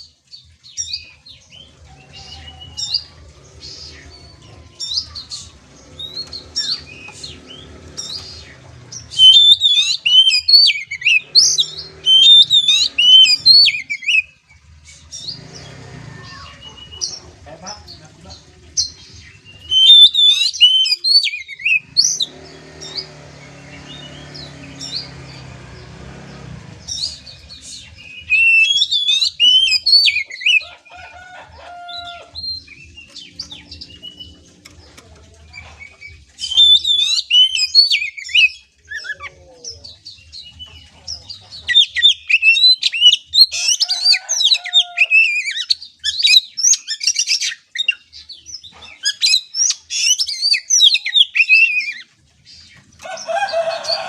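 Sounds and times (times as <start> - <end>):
bird singing whistles and chatter: 2.1 - 17.2, 18.8 - 25.1, 26.9 - 30.6, 35.4 - 48.3, 48.9 - 52.1.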